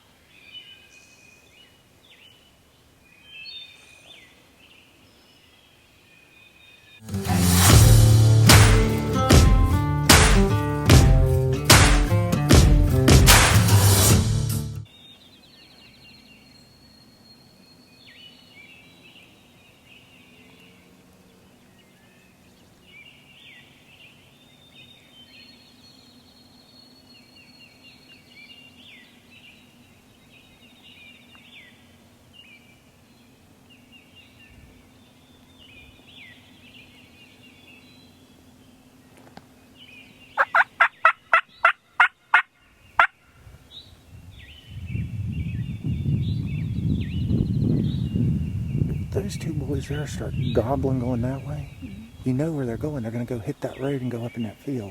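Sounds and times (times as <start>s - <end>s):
low rumbling noise: 7.1s - 12.0s, 44.1s - 53.2s
distant turkeys gobbling: 40.4s - 43.2s
loud turkey yelps: 40.4s - 43.2s.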